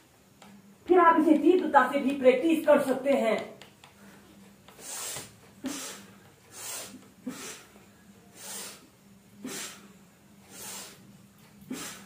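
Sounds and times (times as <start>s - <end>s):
person breathing hard through nose: 4.0s - 11.1s, 11.7s - 12.0s.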